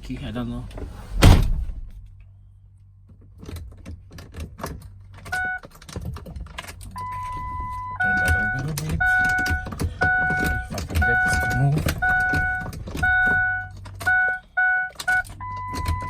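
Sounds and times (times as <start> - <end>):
gear shifter clicks and rattles: 3.1 - 16.0
dashboard warning chime: 5.4 - 5.6, 7.0 - 16.0.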